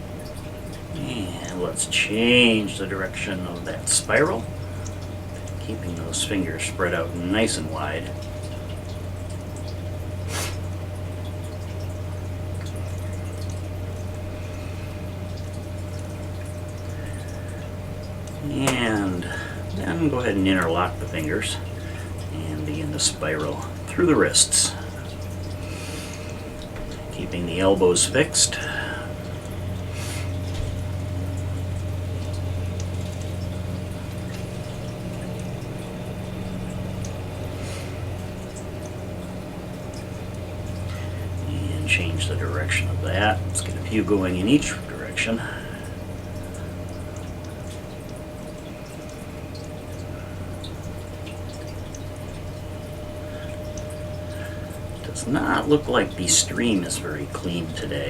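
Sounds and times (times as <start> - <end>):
faint steady tone: 0.0 - 58.0
low hum: 0.0 - 58.0
background hiss: 10.1 - 11.0
short hiss: 10.3 - 10.6.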